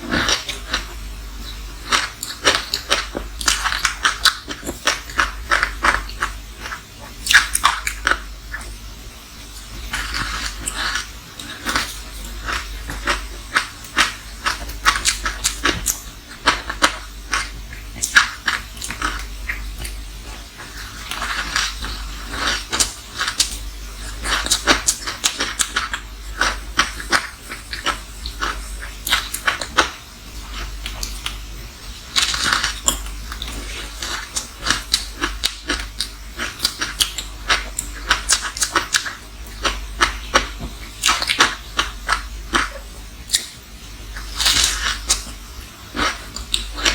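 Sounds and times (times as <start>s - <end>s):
crunching and chewing ice: 9.9s - 20.0s, 20.6s - 29.9s, 32.1s - 43.5s, 44.1s - 46.9s.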